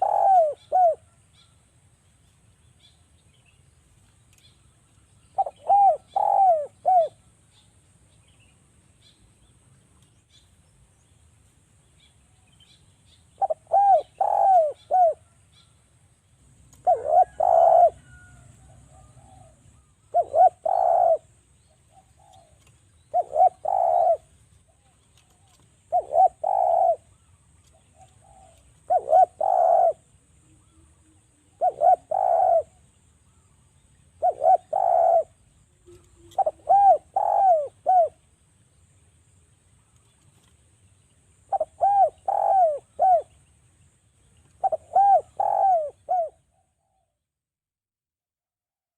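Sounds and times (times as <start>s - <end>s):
dove cooing: 0.0s - 1.2s, 5.3s - 7.4s, 13.4s - 15.4s, 16.7s - 33.4s, 34.2s - 38.2s, 41.5s - 43.4s, 44.5s - 47.1s.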